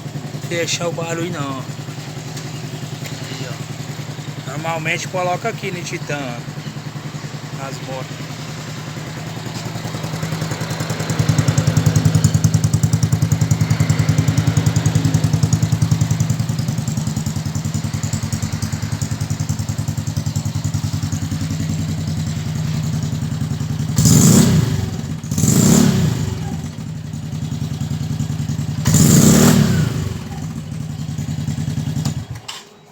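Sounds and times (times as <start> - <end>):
motorcycle engine idling: 0.0 - 32.6
motorcycle throttle revs: 8.1 - 32.4.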